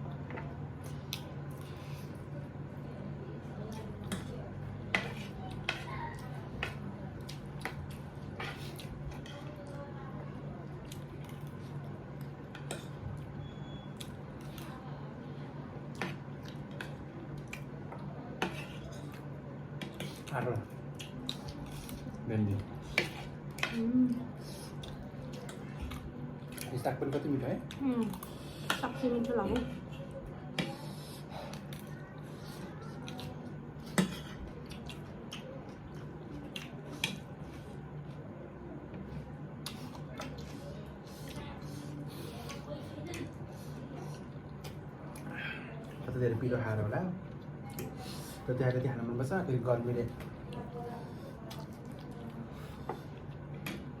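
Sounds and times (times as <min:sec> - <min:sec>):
steady low hum: 0:00.0 - 0:54.0
wet chewing: 0:10.7 - 0:13.0, 0:15.9 - 0:26.9, 0:29.6 - 0:38.2, 0:39.5 - 0:46.1, 0:50.1 - 0:54.0.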